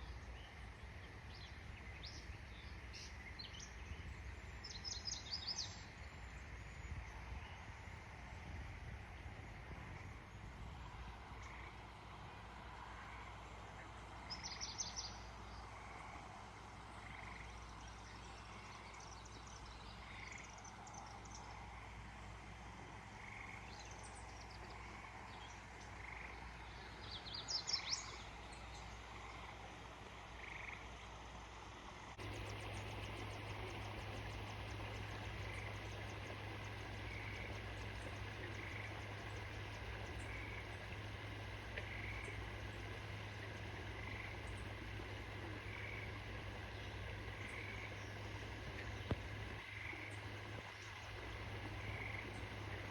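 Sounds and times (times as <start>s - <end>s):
frogs calling: 25.8s - 26.5s, 32.2s - 52.9s.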